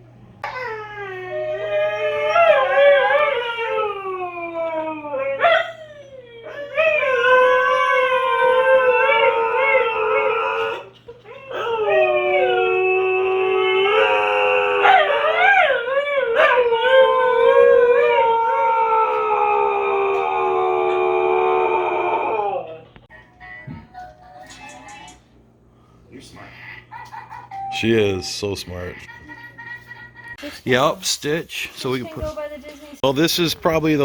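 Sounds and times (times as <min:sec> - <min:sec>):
dog howling: 0:00.4 - 0:23.1.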